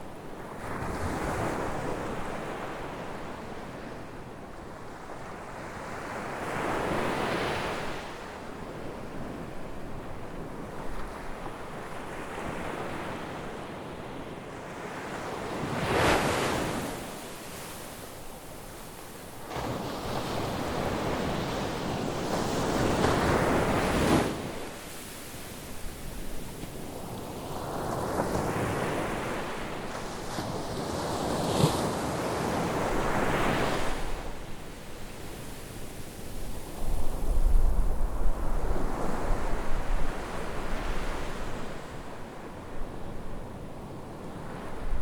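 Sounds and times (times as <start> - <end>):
sea waves breaking on shore: 15.0 - 34.5
wind rumble on microphone: 36.3 - 45.0.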